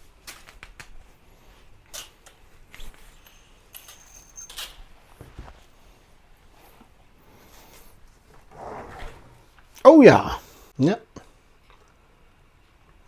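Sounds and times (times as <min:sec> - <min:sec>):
thin squeak: 0:03.1 - 0:04.8.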